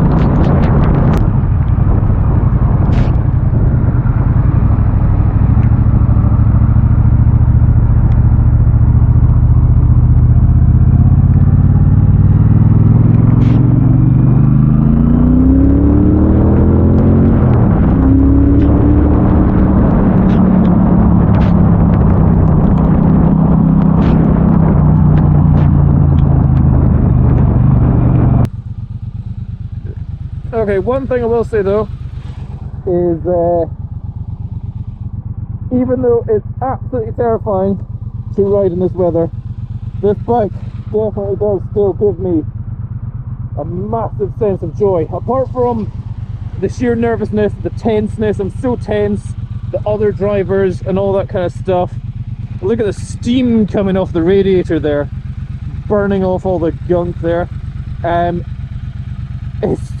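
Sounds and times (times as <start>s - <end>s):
rushing wind noise: 0.0s - 9.4s, 10.0s - 28.5s
motorcycle engine accelerating: 0.0s - 60.0s.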